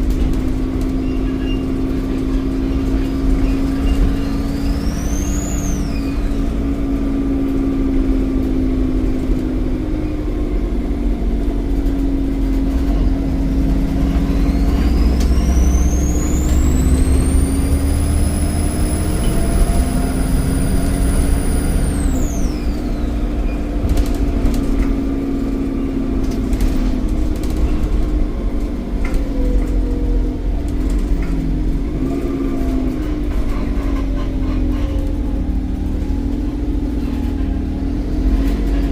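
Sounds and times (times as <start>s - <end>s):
bus diesel engine under load: 0.0s - 38.9s
turbocharger whistle: 3.6s - 6.6s, 13.9s - 23.7s.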